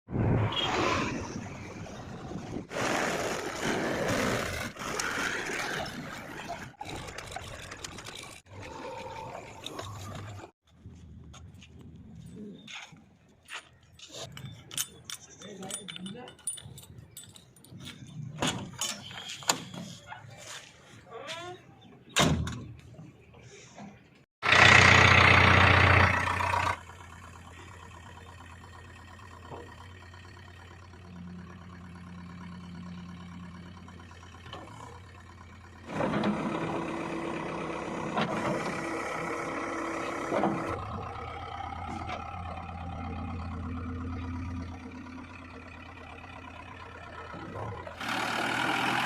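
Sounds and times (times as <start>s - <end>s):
heavy diesel engines running: 23.3s - 49.0s.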